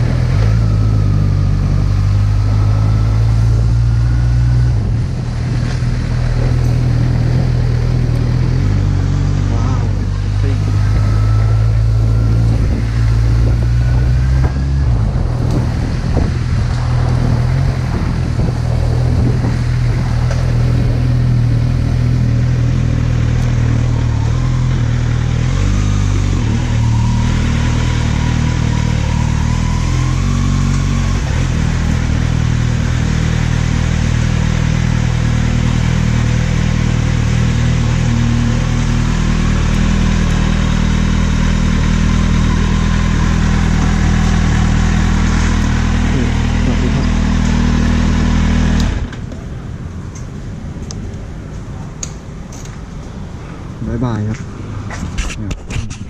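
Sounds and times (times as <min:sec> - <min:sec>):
wind rushing over microphone: 0:00.0 - 0:23.0
motorcycle engine running: 0:00.0 - 0:53.2.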